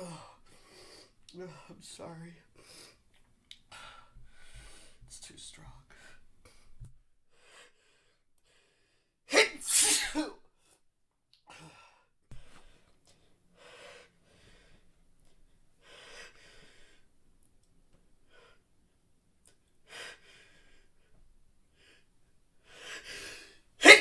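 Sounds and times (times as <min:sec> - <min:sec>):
stifled sneezes: 0:09.3 - 0:10.4, 0:23.8 - 0:24.0.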